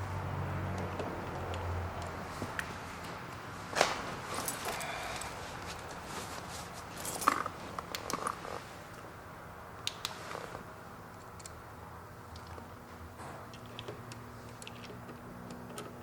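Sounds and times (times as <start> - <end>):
small parts clicking and knocking: 13.5 - 16.0.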